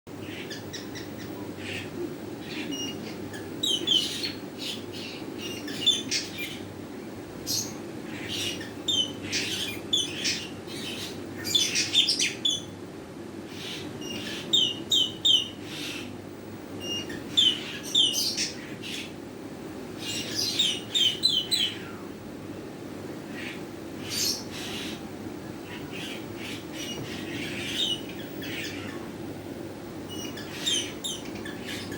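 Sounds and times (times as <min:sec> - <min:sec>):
steady low hum: 0:00.1 - 0:31.9
parrot squawking: 0:25.6 - 0:29.1, 0:30.1 - 0:31.9.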